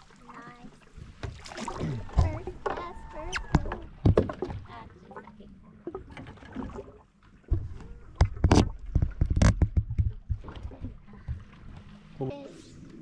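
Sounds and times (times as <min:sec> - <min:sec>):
knocks and thumps on boat: 0:01.0 - 0:04.9, 0:05.9 - 0:11.9.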